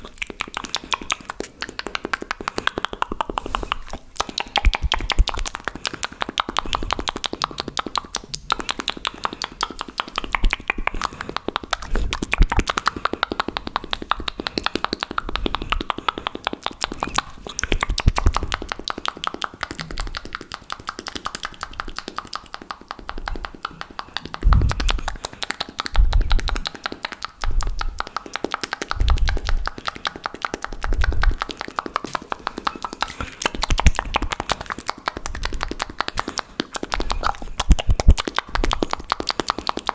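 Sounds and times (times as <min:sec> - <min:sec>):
wet mouth clicks and pops: 0:00.0 - 0:39.9
low thumps: 0:24.4 - 0:25.0.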